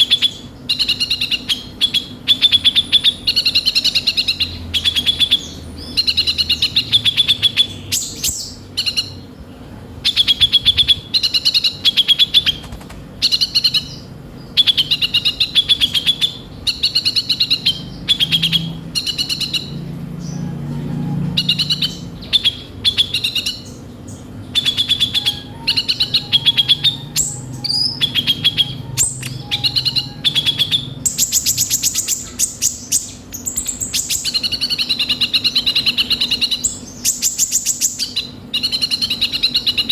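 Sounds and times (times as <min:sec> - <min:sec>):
sunbird chattering song: 0:00.0 - 0:39.9.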